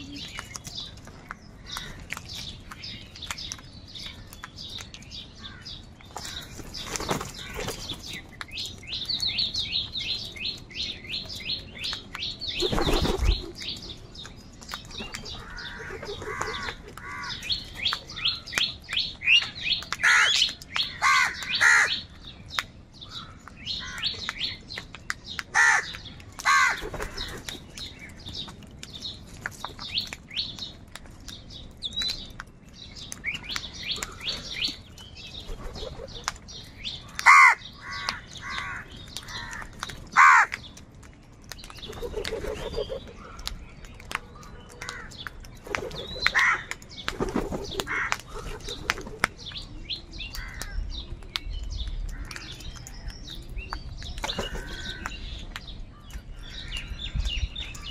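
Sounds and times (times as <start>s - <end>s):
chatter of crow calls: 0.0s - 3.0s, 14.9s - 22.3s, 23.0s - 24.6s, 25.4s - 27.9s, 33.3s - 40.8s, 41.7s - 53.5s, 54.1s - 57.9s
loud harsh crow caws: 15.4s - 17.4s, 20.0s - 22.0s, 25.6s - 27.2s, 37.2s - 40.6s.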